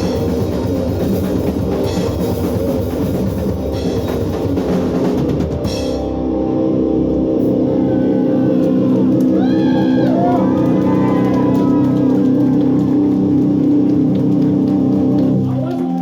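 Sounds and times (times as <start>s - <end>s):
pounding drums and cymbals: 0.0s - 6.2s.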